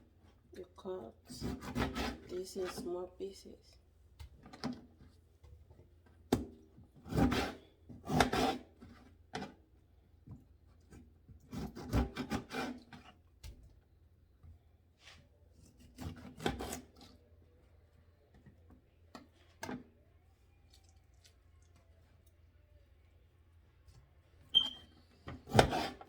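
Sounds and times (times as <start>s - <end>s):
knife cutting on cutting board: 25.4s - 26.0s.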